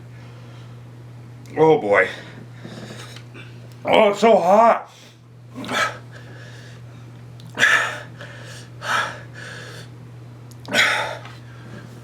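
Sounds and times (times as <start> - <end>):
low electrical hum: 0.0 - 12.0
man breathing sharply: 6.1 - 6.9, 7.6 - 9.9.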